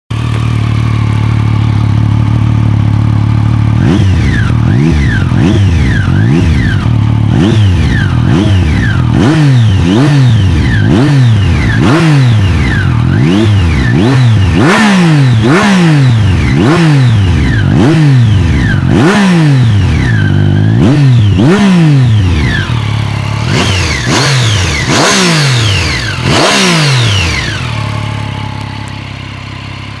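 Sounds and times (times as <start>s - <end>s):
motorcycle engine revving: 0.1s - 30.0s.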